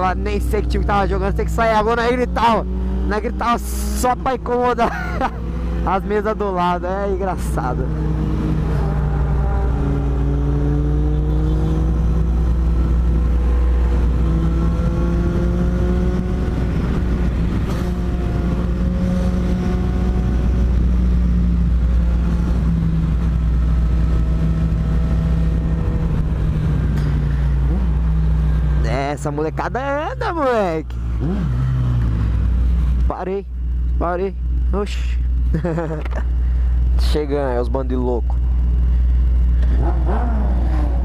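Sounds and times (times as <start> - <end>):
motorcycle engine drone: 0.0 - 41.0
motorcycle engines revving: 0.0 - 41.0.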